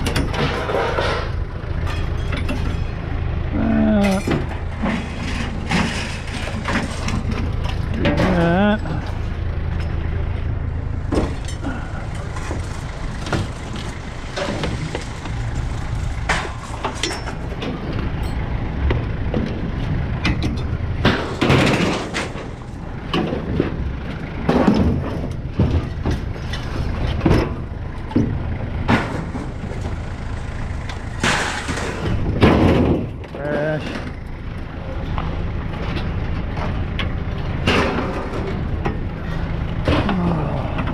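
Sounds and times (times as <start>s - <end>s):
low engine rumble: 0.0s - 40.9s
scrap metal clanking and banging: 0.0s - 40.9s.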